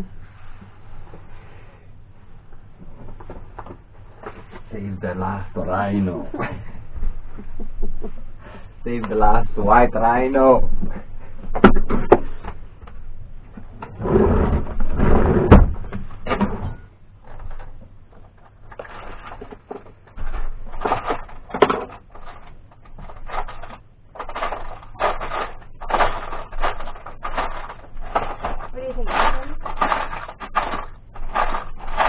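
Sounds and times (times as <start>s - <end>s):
objects knocking and clattering: 10.6s - 32.0s.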